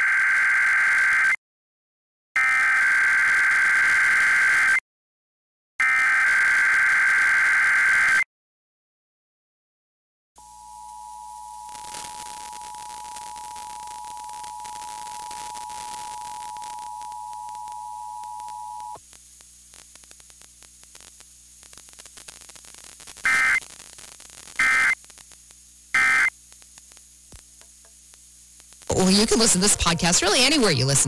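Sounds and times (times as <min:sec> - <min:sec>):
digital data bursts: 0:11.7 - 0:19.0, 0:21.8 - 0:25.2, 0:25.9 - 0:26.4, 0:28.8 - 0:31.0
radio static: 0:11.7 - 0:31.0.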